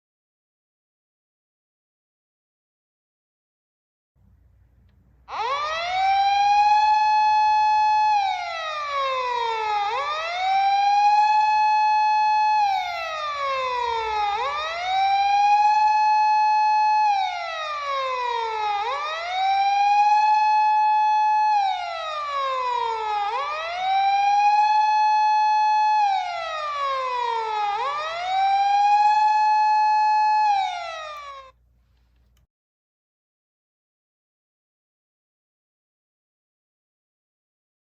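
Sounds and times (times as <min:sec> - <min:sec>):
toy police siren wailing: 0:05.3 - 0:31.6.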